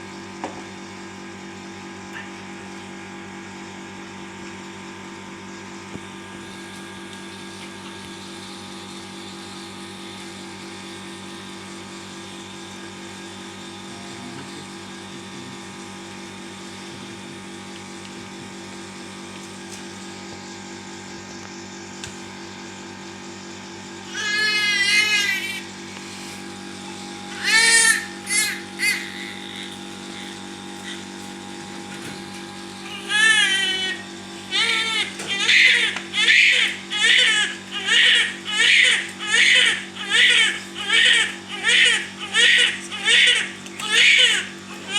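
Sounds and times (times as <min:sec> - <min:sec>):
machine hum: 0:00.0 - 0:44.9
baby crying: 0:24.1 - 0:25.6, 0:27.3 - 0:29.8, 0:32.9 - 0:44.9.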